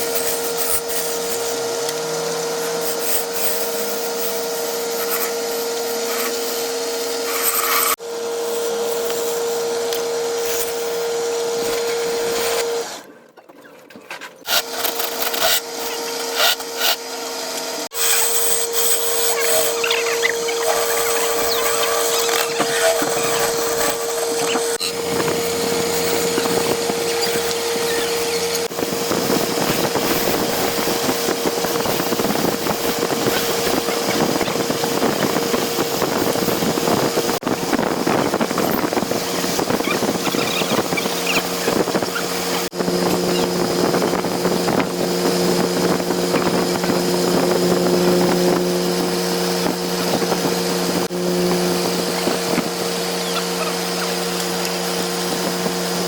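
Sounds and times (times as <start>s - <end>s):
lathe motor humming: 0.0s - 13.0s, 14.6s - 56.0s
tool cutting spinning wood: 0.0s - 13.1s, 14.3s - 56.0s.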